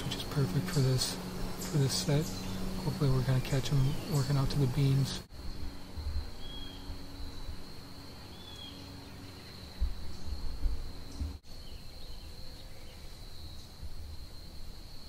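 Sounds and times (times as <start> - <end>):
low microphone rumble: 0.0 - 11.4
faint bird chirps: 0.0 - 13.9
insects trilling: 0.0 - 15.0.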